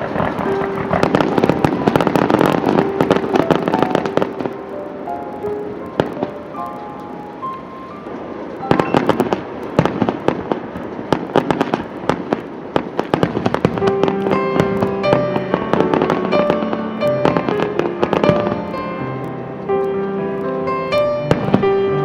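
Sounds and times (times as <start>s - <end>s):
music with held notes: 0.0s - 9.4s, 13.8s - 22.0s
fireworks cracking and popping: 0.0s - 22.0s.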